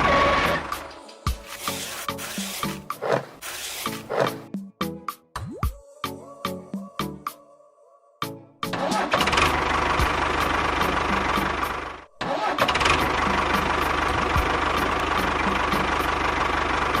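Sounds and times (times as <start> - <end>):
small engine running: 1.3 - 4.5.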